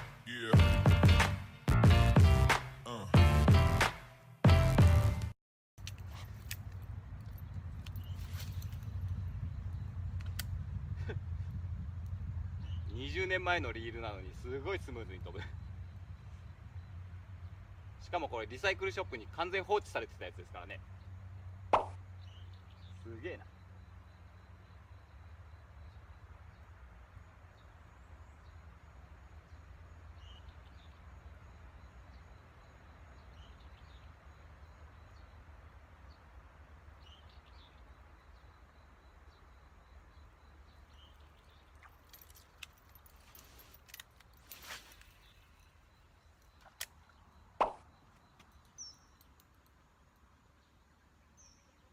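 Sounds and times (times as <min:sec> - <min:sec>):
low rumble: 0:06.6 - 0:18.0
sharp clicks: 0:10.1 - 0:10.6.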